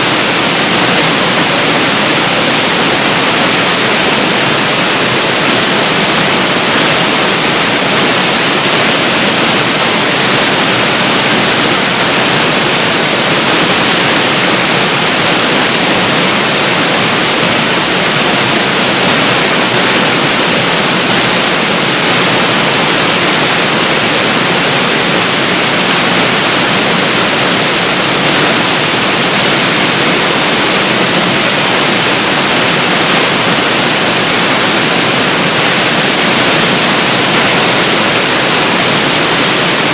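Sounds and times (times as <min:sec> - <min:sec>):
waterfall roaring: 0:00.0 - 0:39.9.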